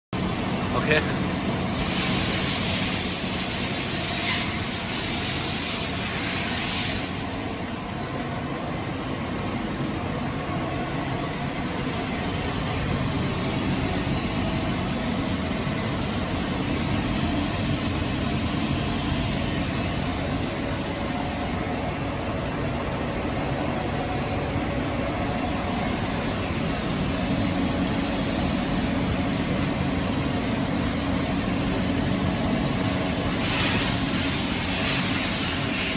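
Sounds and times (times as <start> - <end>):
air hissing: 1.8 - 7.4, 33.2 - 35.9.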